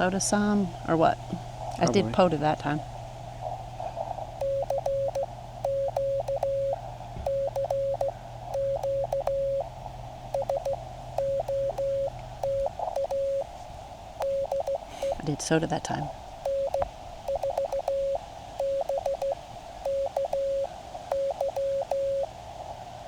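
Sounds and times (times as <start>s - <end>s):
radio receiver hiss: 0.0s - 23.0s
morse code tone: 4.4s - 13.5s, 14.2s - 15.3s, 16.4s - 22.3s.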